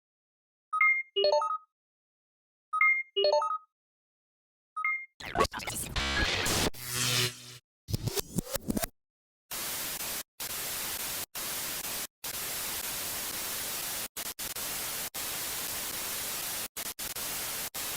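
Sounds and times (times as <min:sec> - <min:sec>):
static hiss: 0:09.5 - 0:17.9.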